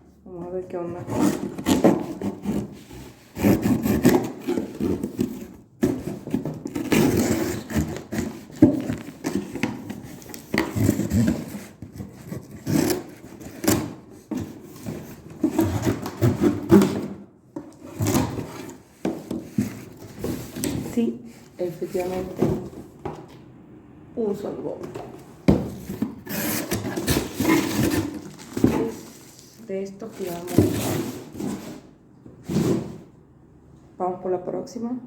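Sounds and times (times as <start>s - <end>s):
cardboard and tape scraping: 0.8s - 17.1s, 17.7s - 22.8s, 25.7s - 31.9s.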